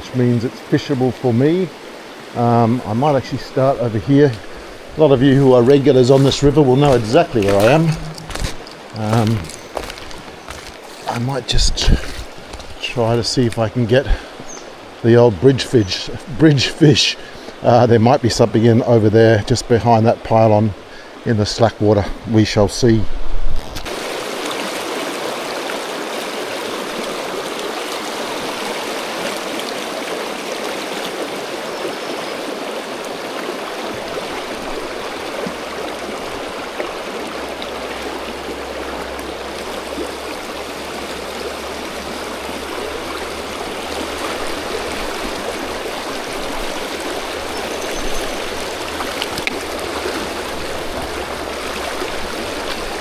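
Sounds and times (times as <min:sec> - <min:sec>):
river rushing over rocks: 0:00.0 - 0:13.0, 0:23.9 - 0:53.0.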